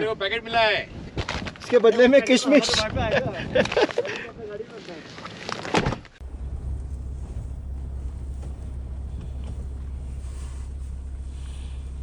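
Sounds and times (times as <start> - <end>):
wind buffeting microphone: 0.0 - 4.6.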